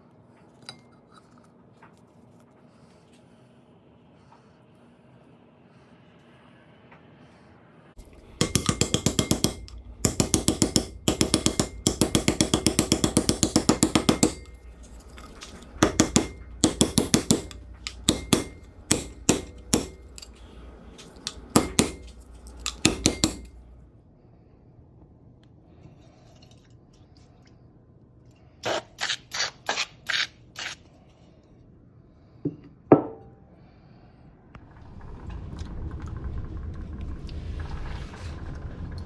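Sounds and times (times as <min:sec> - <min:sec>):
low rumble: 0:08.0 - 0:24.2, 0:34.2 - 0:39.0
rapid evenly spaced knocks: 0:08.1 - 0:23.6.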